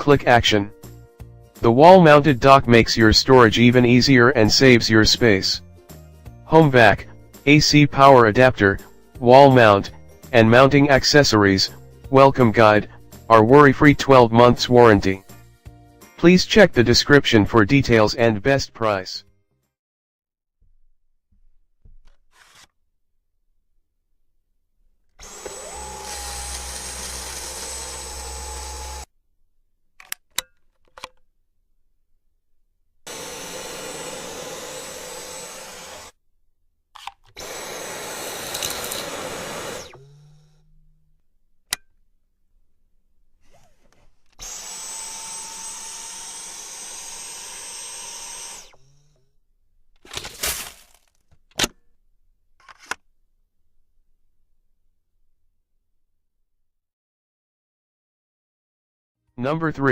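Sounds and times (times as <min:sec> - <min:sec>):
stick vacuum motor whine: 0:25.2 - 0:29.1, 0:33.1 - 0:36.2, 0:37.4 - 0:41.1, 0:43.5 - 0:49.3.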